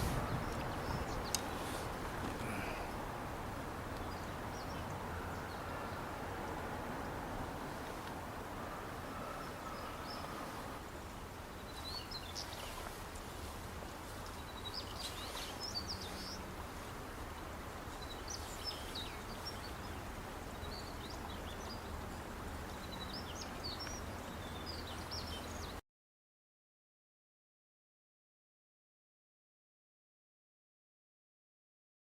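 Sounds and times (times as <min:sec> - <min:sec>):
small birds chirping: 0:00.0 - 0:02.9.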